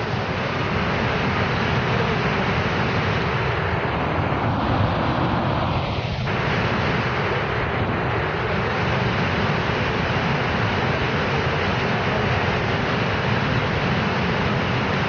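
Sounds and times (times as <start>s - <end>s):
waterfall roaring: 0.0s - 15.0s.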